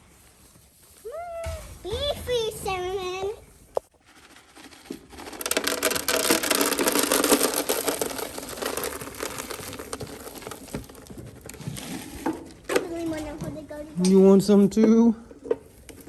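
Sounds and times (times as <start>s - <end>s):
dense rustling and crackling: 0.0s - 14.5s.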